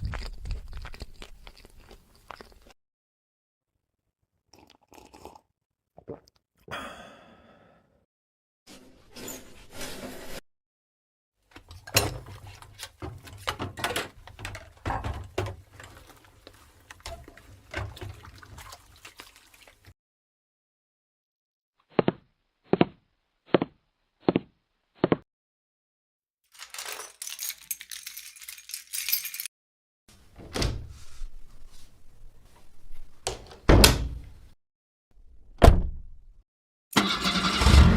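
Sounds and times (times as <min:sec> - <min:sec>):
dishes clinking under running water: 0:13.1 - 0:18.8.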